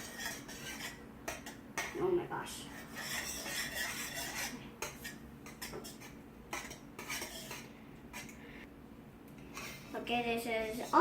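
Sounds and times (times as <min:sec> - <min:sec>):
utensil clinking against a bowl: 0:00.0 - 0:02.0, 0:03.0 - 0:08.4.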